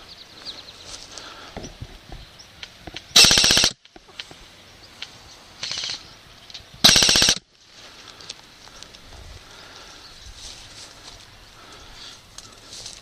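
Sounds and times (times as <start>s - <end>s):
airsoft gun full-auto bursts: 3.2s - 3.8s, 6.8s - 7.4s.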